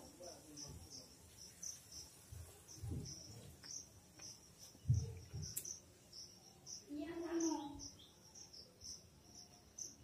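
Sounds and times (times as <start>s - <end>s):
insects chirping: 0.0s - 10.0s
low muffled thumps: 2.3s - 3.4s, 4.8s - 5.6s.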